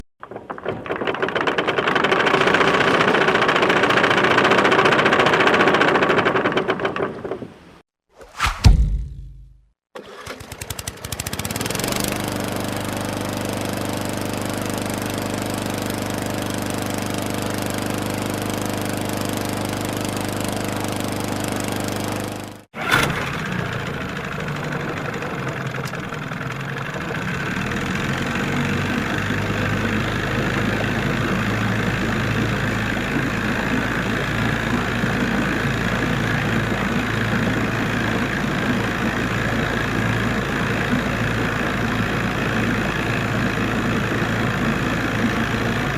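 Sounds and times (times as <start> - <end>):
boat engine running: 10.0 - 22.6, 23.5 - 45.9
noisier engine sound: 10.0 - 45.9.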